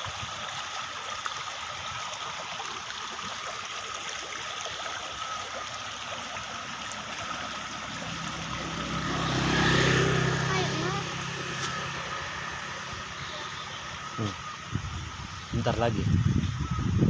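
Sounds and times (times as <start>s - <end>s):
stream trickling: 0.0s - 17.0s
vehicle engine approaching: 6.4s - 15.4s.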